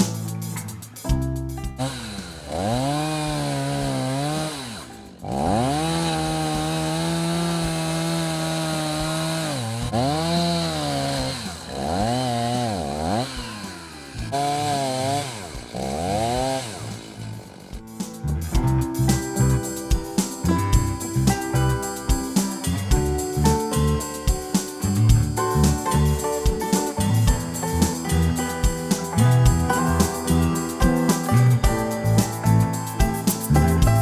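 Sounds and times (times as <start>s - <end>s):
chainsaw running at high revs: 1.8s - 17.8s.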